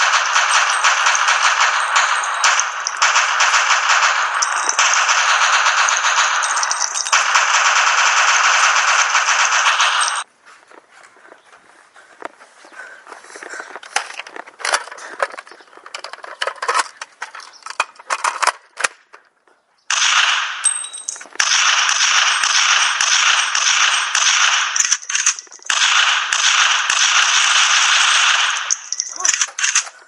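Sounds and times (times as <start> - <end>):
rapid-fire gunfire: 0.0 - 10.2, 19.9 - 20.6, 21.4 - 29.8
sharp clicks and pops: 0.0 - 10.3, 19.9 - 30.0.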